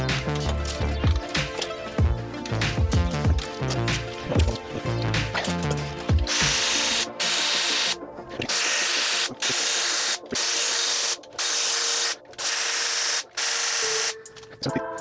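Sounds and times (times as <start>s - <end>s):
cordless power tool bursts: 6.3s - 14.2s.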